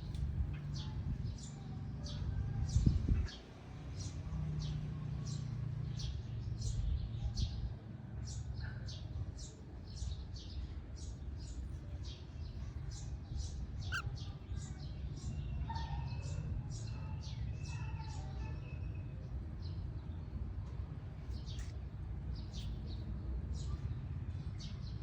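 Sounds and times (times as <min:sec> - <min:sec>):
steady low rumble: 0:00.0 - 0:03.4
cockatiels chirping: 0:13.8 - 0:14.4.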